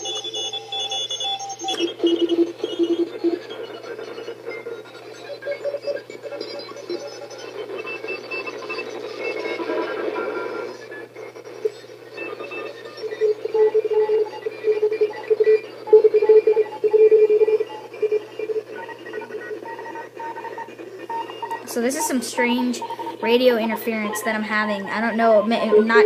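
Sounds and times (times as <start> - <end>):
radio static hiss: 0.0 - 26.0
rapid choppy radio beeps: 0.0 - 26.0.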